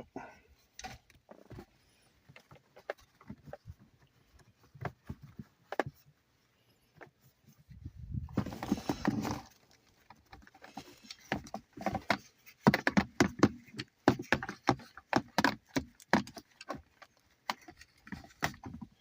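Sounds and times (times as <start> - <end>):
hands rustling plastic parts: 0.5 - 19.0
sharp plastic clicks and knocks: 8.9 - 19.0.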